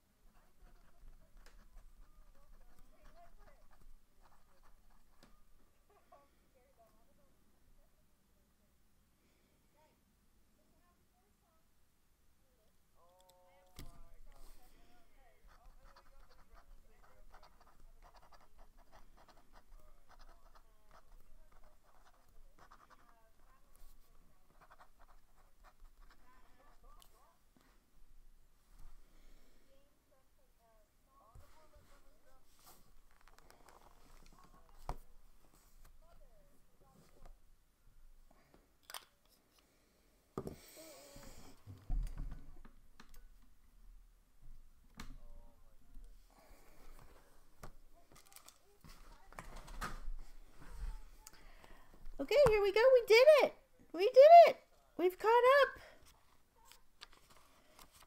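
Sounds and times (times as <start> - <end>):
pen nib scratching paper: 0.3 - 5.2, 15.4 - 27.0
paper rustle: 48.1 - 50.1, 56.6 - 58.0.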